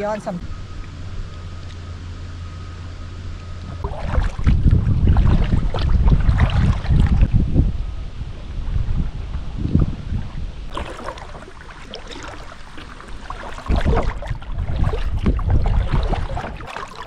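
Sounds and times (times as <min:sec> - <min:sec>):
paddle splashing water: 0:03.6 - 0:07.3, 0:10.7 - 0:17.0
wind buffeting microphone: 0:03.6 - 0:17.0.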